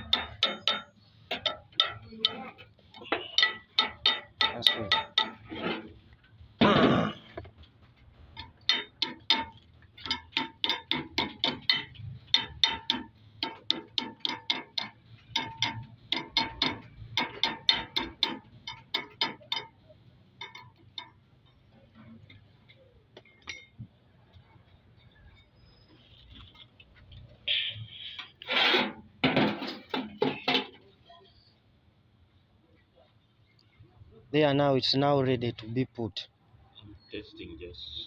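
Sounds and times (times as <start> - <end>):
metal scrape: 0.0 - 6.2, 24.5 - 30.8
hand tools clicking on metal: 8.4 - 19.8.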